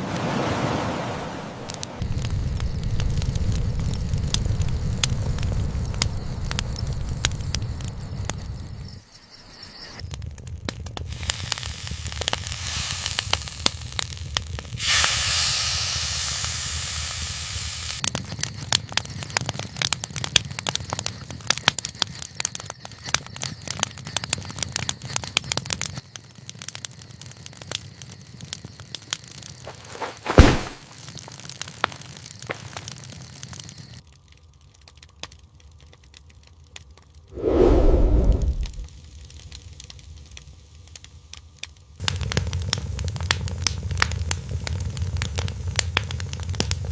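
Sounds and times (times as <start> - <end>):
campfire crackling and popping: 1.6 - 9.0, 10.0 - 46.9
loud hissing rush: 14.8 - 18.0, 37.4 - 38.9
steady low rumble: 37.4 - 38.9.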